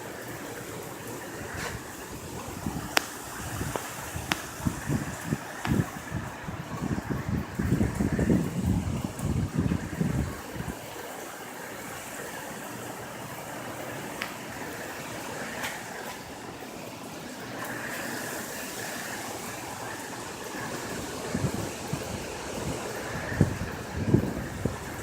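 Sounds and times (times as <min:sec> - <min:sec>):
hurricane wind rushing: 0:00.0 - 0:25.0
wind gusts buffeting microphone: 0:00.2 - 0:11.2, 0:17.7 - 0:25.0.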